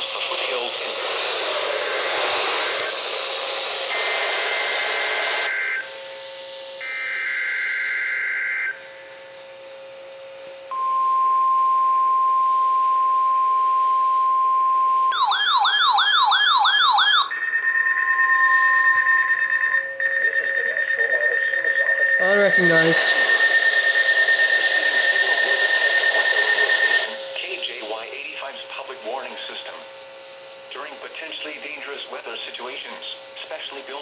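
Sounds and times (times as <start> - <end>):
steady electronic alarm tone: 15.1 - 27.3
steady warning alarm tone: 15.1 - 27.3
screechy data bursts: 18.4 - 27.2.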